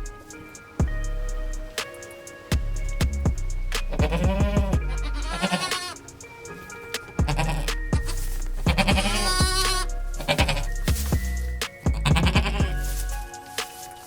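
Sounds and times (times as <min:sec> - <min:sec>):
music beat with bass and drums: 0:00.0 - 0:14.0
goat bleating: 0:03.9 - 0:06.0, 0:07.3 - 0:07.7, 0:08.7 - 0:10.8, 0:12.0 - 0:13.0.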